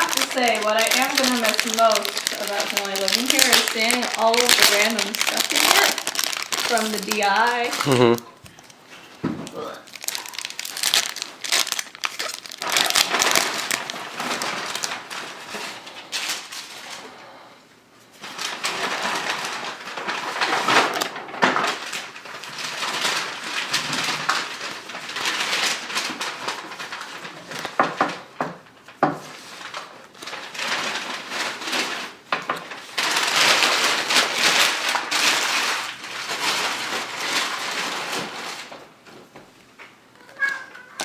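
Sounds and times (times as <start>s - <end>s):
foil wrapper crinkling and tearing: 0.0s - 8.8s, 9.4s - 17.4s, 18.2s - 38.9s, 40.1s - 41.0s
packaging and cards rustling: 0.0s - 8.8s, 9.4s - 16.9s, 29.3s - 38.9s.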